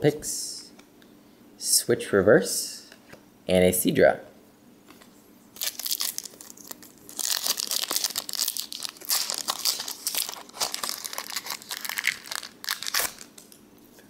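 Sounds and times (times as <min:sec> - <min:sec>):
foil wrapper crinkling and tearing: 0:05.6 - 0:13.6.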